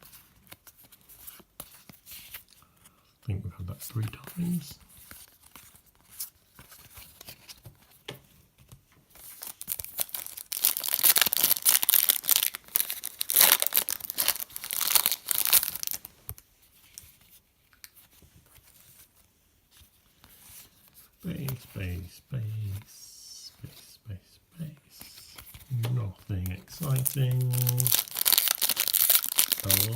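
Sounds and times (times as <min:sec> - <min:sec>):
card pack wrapper tearing and crinkling: 0:09.2 - 0:16.4, 0:25.0 - 0:29.9
cards ticking while handled: 0:24.9 - 0:29.9.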